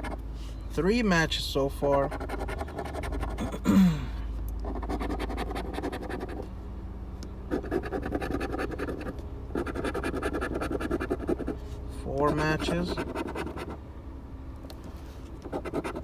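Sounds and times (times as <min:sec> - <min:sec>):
scratch card scraping: 0:07.5 - 0:11.6, 0:12.3 - 0:13.8, 0:15.4 - 0:16.0.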